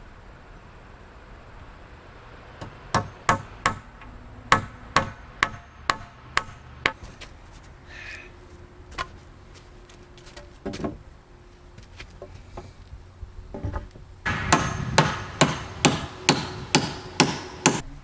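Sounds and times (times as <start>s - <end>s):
hammer striking timber: 2.6s - 3.9s, 4.5s - 6.6s, 14.3s - 17.9s.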